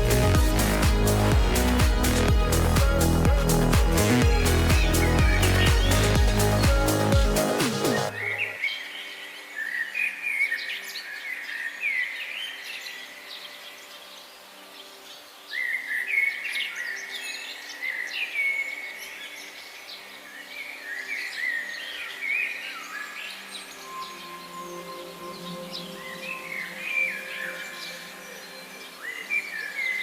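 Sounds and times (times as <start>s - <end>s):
birds chirping and singing: 0.0s - 14.2s.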